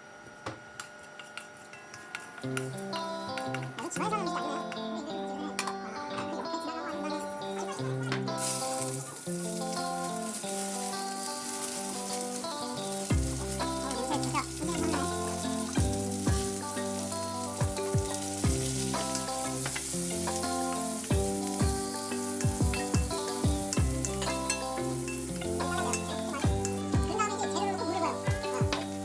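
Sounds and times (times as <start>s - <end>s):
food frying and sizzling: 0.3s - 29.0s
music with punchy drum beat: 13.1s - 13.9s, 14.7s - 16.6s, 17.6s - 27.2s, 28.2s - 29.0s.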